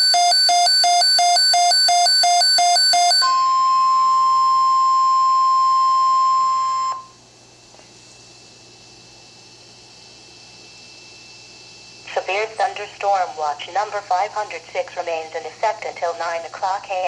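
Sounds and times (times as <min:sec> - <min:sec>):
weather radio alarm beeping fast: 0:00.0 - 0:07.0
steady high warning tone: 0:00.0 - 0:07.3
faint radio hiss: 0:12.0 - 0:17.0.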